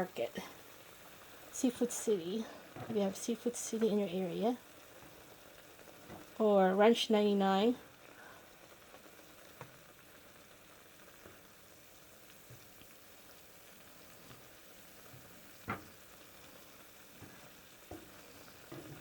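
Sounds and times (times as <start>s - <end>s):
sausages boiling in water: 0.0s - 19.0s.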